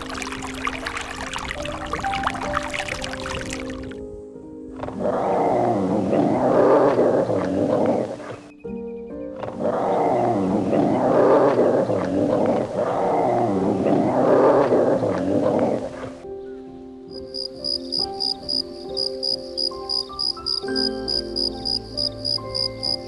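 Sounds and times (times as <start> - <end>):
background music with held notes: 0.0 - 23.0.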